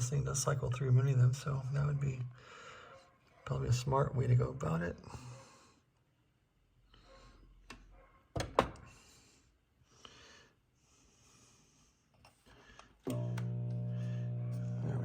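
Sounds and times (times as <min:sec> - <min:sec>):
soft breathing: 0:02.4 - 0:03.2.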